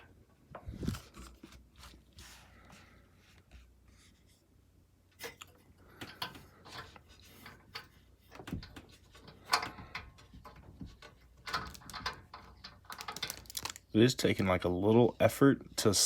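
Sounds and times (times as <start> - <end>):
metal hardware clicking and knocking: 5.2 - 13.7.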